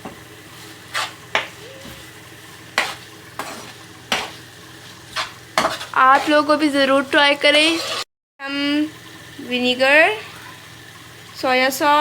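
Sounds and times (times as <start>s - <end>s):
faint frying sizzle: 0.0s - 7.8s, 8.4s - 12.0s
utensil scraping frying pan: 0.0s - 8.1s.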